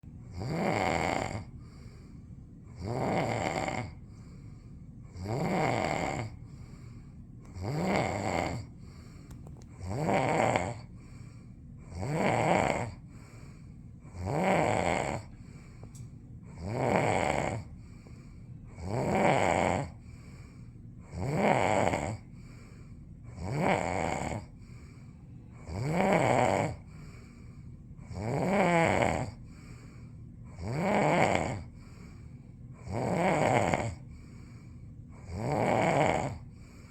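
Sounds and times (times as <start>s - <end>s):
person snoring: 0.3s - 1.8s, 2.7s - 4.0s, 5.1s - 6.8s, 7.5s - 9.2s, 9.8s - 11.2s, 11.8s - 13.4s, 14.1s - 15.7s, 16.5s - 17.8s, 18.7s - 20.1s, 21.0s - 22.2s, 23.3s - 25.0s, 25.6s - 32.2s, 32.8s - 36.9s.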